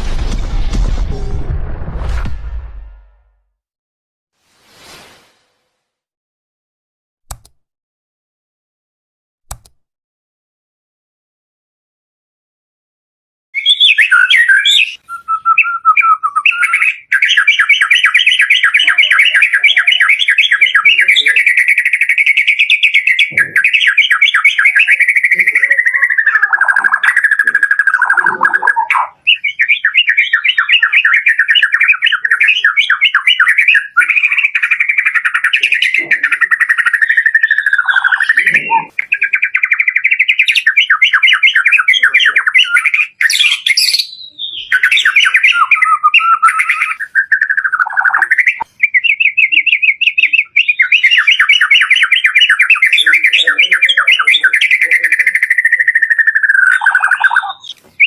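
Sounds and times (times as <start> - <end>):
bird singing trilling phrases: 13.6 - 58.0.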